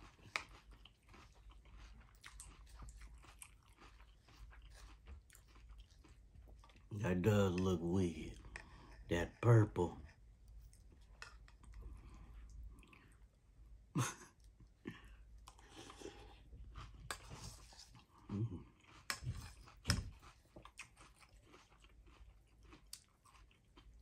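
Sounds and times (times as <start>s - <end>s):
person chewing crunchy cereal: 0.0s - 13.4s, 14.3s - 24.0s.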